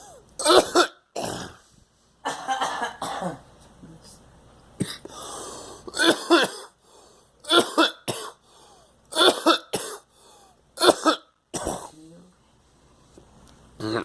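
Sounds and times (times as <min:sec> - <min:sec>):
person coughing hard: 0:00.0 - 0:01.6, 0:02.2 - 0:03.4, 0:04.8 - 0:05.2, 0:05.9 - 0:06.8, 0:07.4 - 0:08.4, 0:09.1 - 0:10.1, 0:10.8 - 0:12.0
gasping breaths: 0:05.1 - 0:05.9.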